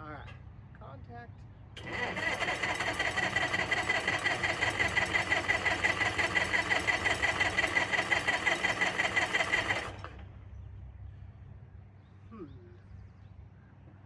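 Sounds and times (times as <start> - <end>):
engine cranking on starter: 1.8 - 10.4.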